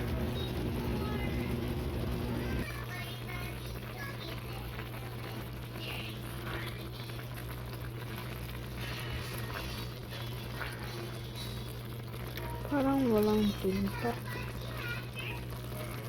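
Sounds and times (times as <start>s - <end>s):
constant low hum: 0.0s - 2.6s
food bubbling in a pan: 0.0s - 16.0s.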